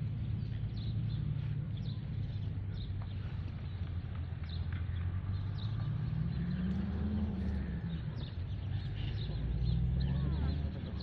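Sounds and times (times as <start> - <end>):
steady low rumble: 0.0 - 9.7
small birds chirping: 0.0 - 11.0.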